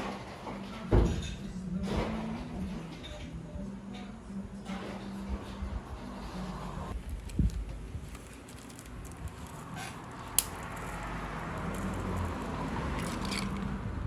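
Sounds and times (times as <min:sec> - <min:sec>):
soft rustling: 0:06.9 - 0:13.6.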